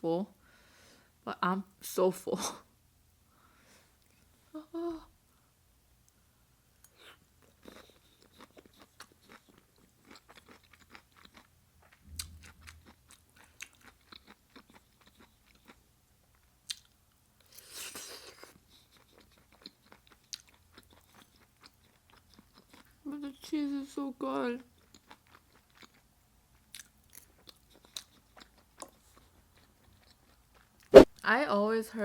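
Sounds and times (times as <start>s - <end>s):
chewing crunchy vegetables: 6.8s - 23.0s, 24.6s - 31.0s.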